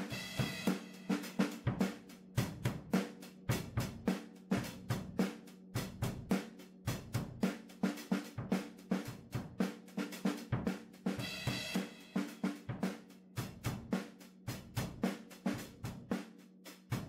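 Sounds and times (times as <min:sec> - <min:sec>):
drum kit beat: 0:00.0 - 0:17.0.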